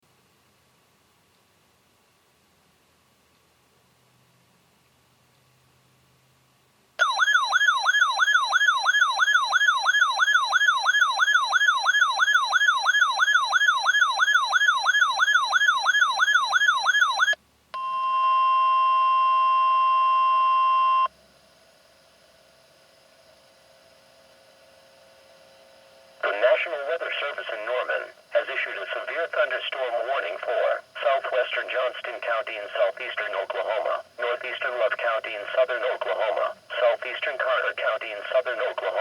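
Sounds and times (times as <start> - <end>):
electronic siren warbling: 7.0 - 17.4
faint radio hum and hiss: 26.0 - 39.0.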